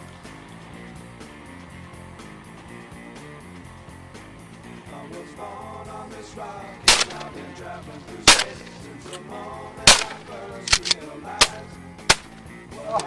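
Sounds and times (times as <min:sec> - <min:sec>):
shotgun shots: 0:06.9 - 0:07.4, 0:08.3 - 0:08.8, 0:09.9 - 0:12.4.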